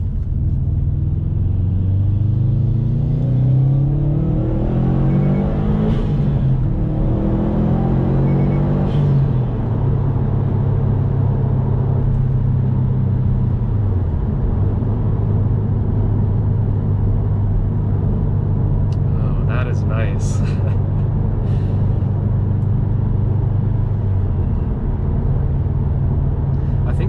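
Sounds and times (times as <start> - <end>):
turbocharged car engine revving: 1.1 - 9.5.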